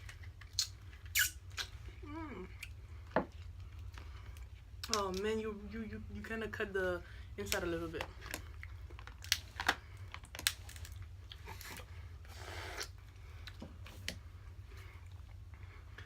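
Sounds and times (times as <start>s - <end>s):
low steady hum: 0.0s - 16.0s
crab shells cracking: 8.2s - 11.4s.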